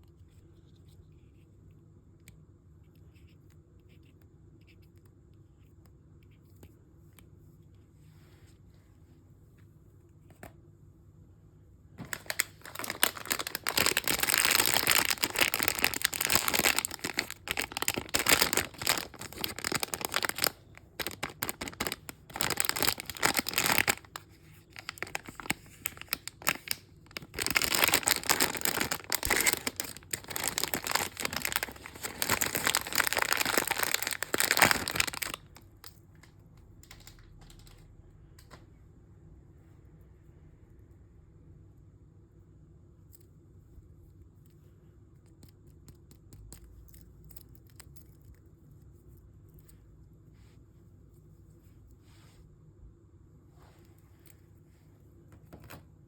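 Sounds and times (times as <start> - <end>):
package crinkling and tearing: 12.0 - 37.8.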